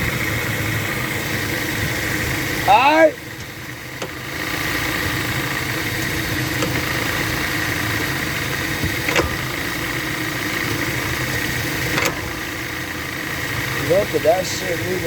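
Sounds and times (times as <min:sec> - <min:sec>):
car engine running: 0:00.0 - 0:15.0
sharp clicks: 0:03.4 - 0:12.8.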